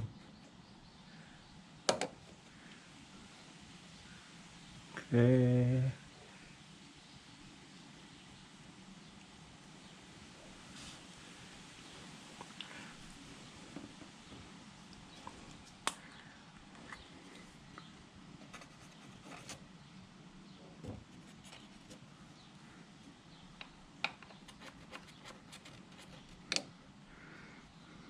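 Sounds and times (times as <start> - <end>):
faint background noise: 0.0 - 28.0.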